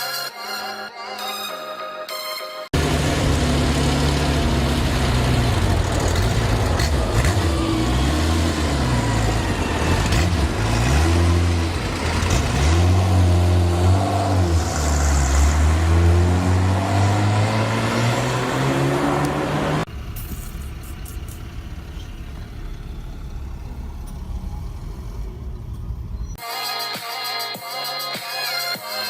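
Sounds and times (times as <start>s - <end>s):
supercar engine revving: 2.8s - 19.9s.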